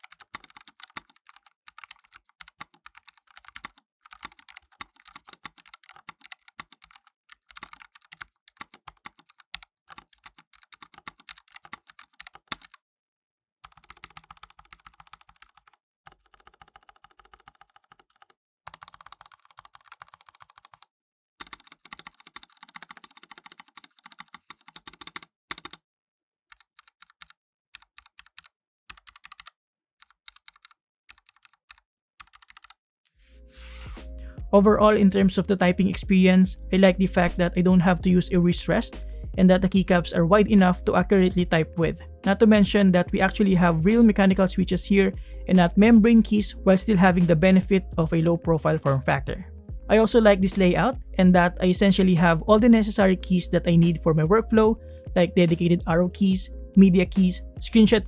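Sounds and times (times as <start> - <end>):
mechanical keyboard typing: 0.0 - 12.8, 13.6 - 25.8, 26.5 - 32.8.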